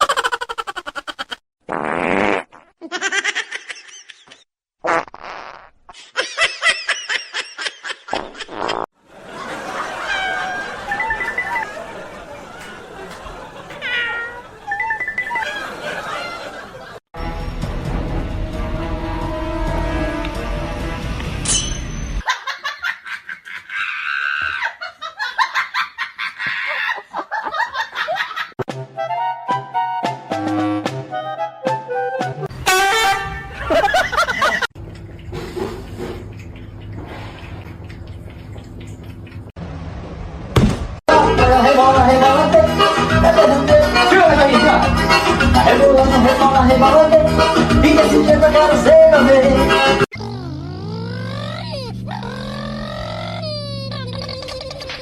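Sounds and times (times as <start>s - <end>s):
pulsing laughter: 9.2s - 17.0s, 33.5s - 34.7s, 50.2s - 55.0s.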